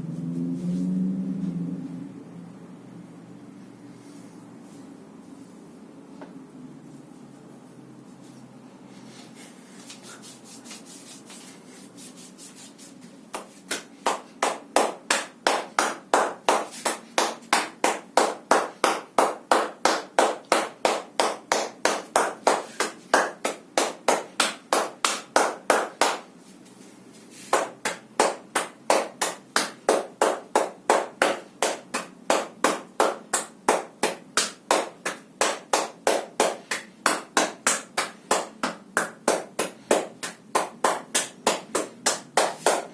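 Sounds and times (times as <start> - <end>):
hands slapping on body: 13.3 - 26.3.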